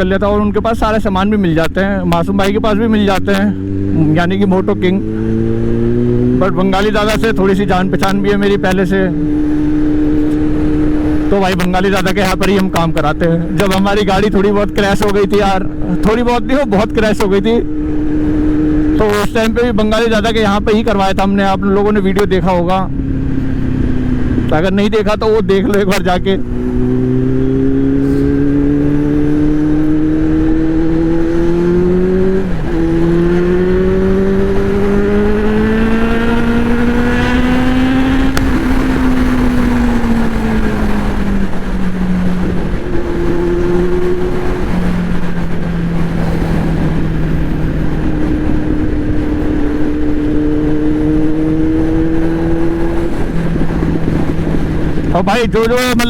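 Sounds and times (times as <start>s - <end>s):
motorcycle engine revving: 0.8s - 56.0s
wind rushing: 26.4s - 55.6s.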